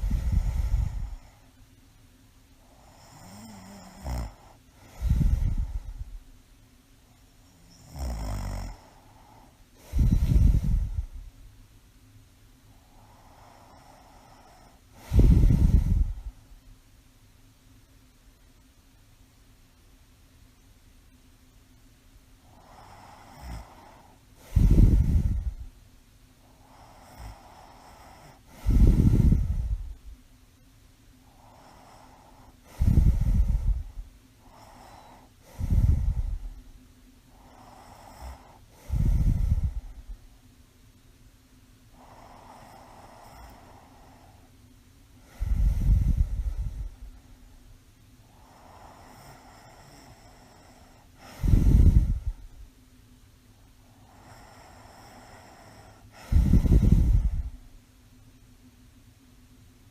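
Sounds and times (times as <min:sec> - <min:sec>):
woman snoring: 0:00.0 - 0:01.5, 0:02.6 - 0:06.2, 0:07.5 - 0:11.3, 0:12.8 - 0:16.4, 0:22.4 - 0:25.7, 0:26.5 - 0:30.0, 0:31.2 - 0:36.6, 0:37.3 - 0:40.2, 0:41.9 - 0:44.5, 0:45.2 - 0:47.2, 0:48.2 - 0:52.6, 0:53.8 - 0:57.6
soft breaths: 0:00.0 - 0:59.9.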